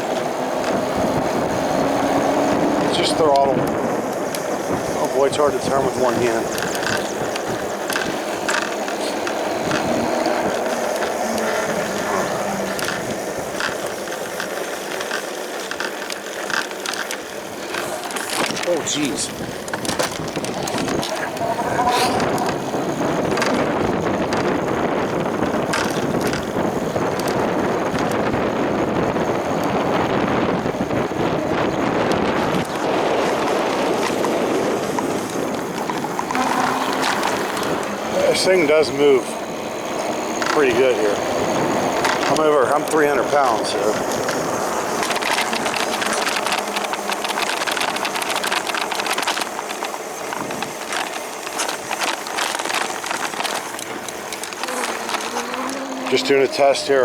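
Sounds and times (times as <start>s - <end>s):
bicycle freewheel ratcheting: 0.0s - 57.0s
electric motor hum: 0.0s - 57.0s
wind buffeting microphone: 0.0s - 57.0s
scattered clicks: 3.0s - 28.4s, 40.3s - 41.2s, 41.9s - 57.0s.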